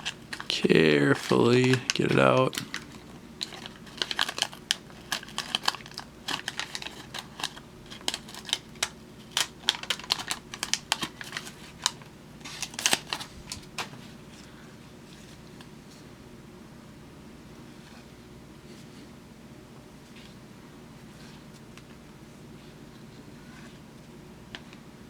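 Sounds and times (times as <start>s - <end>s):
crackling of card pack handled: 0.0s - 14.2s.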